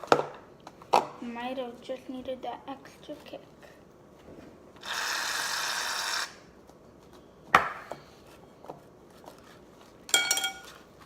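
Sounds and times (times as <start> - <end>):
small electric motor buzzing: 4.8 - 6.4
dishes clattering: 10.1 - 10.8.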